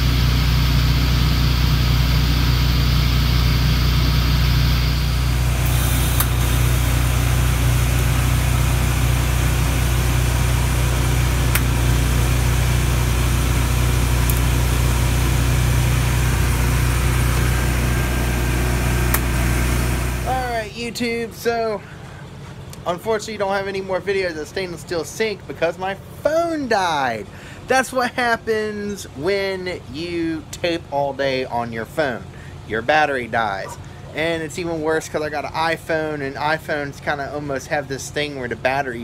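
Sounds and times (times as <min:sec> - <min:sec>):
engine idling: 0:00.0 - 0:32.7
sharp clicks: 0:05.6 - 0:06.5, 0:11.4 - 0:11.9.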